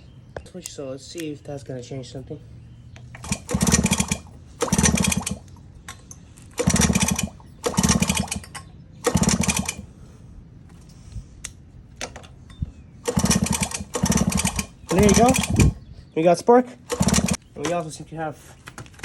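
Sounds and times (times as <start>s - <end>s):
engine cranking without firing: 3.0s - 10.1s, 13.0s - 15.9s, 16.7s - 17.8s.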